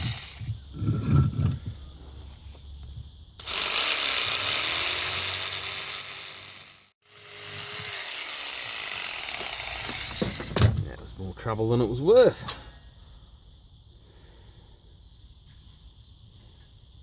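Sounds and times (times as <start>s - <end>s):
power tool grinding: 0.0s - 1.6s, 3.4s - 10.6s.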